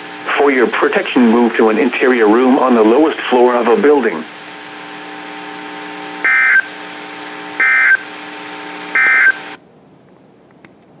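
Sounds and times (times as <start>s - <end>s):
steady radio hum: 0.0s - 9.6s
digital data tone bursts: 6.2s - 6.7s, 7.6s - 8.1s, 8.9s - 9.5s.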